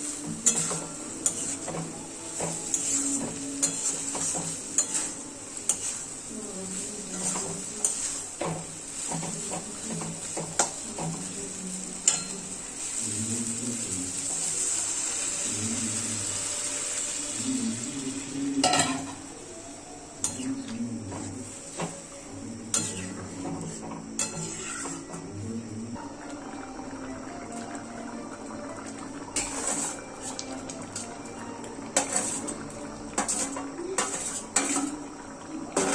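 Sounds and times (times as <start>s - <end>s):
food sizzling in a pan: 0.0s - 35.9s
spoon stirring and scraping: 0.2s - 11.3s, 22.7s - 25.2s, 29.4s - 31.2s, 32.0s - 34.9s.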